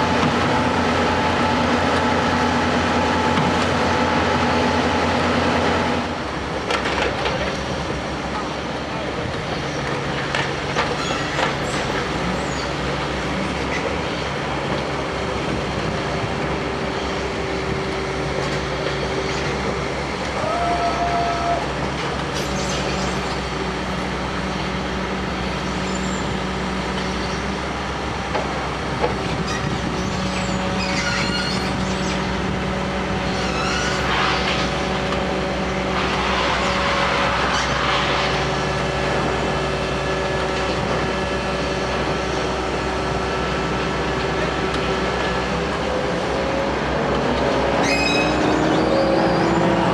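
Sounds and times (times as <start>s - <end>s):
diesel engine hum: 0.0s - 49.9s
metallic squeals: 29.5s - 32.3s, 33.3s - 34.5s, 47.8s - 49.9s.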